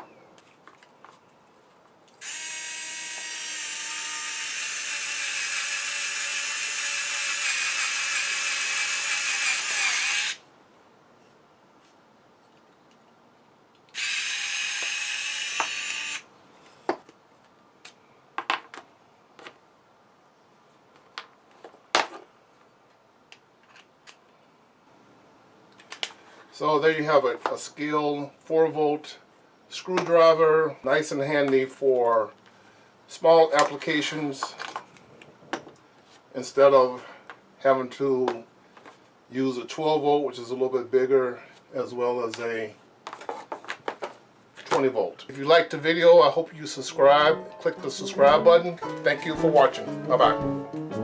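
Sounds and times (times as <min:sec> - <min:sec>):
cordless screwdriver motor whine: 0:02.2 - 0:10.4, 0:13.9 - 0:16.3.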